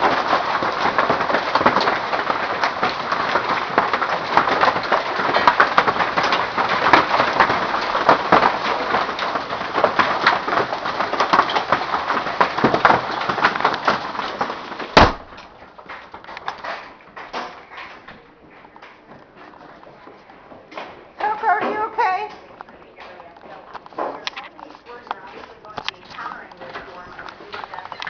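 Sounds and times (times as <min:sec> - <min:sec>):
hailstones pelting down: 0:00.0 - 0:28.0
loud knock: 0:14.9 - 0:15.5.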